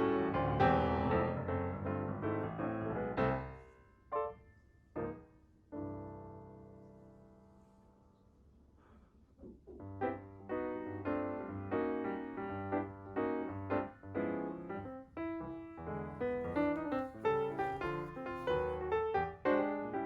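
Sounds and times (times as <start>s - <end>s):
piano chords over bass line: 0.0s - 3.6s, 9.9s - 20.0s.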